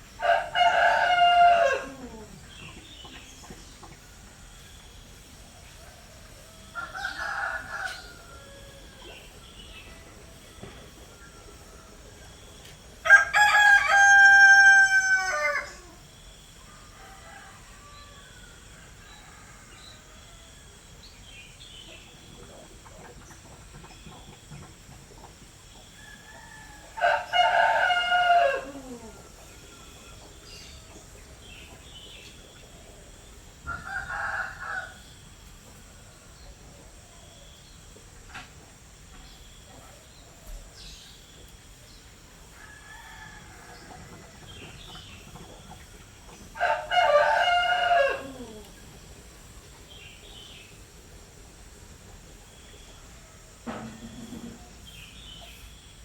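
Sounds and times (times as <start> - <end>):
rooster crowing: 0.2 - 2.4, 5.9 - 9.3, 13.0 - 16.0, 16.7 - 20.8, 26.0 - 30.0, 33.6 - 35.1, 42.5 - 44.4, 46.6 - 48.8.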